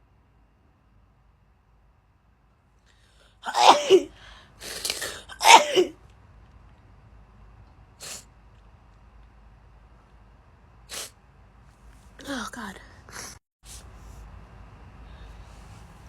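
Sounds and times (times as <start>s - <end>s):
girl sneezing: 3.5s - 5.9s
short breathy puff: 4.2s - 5.2s.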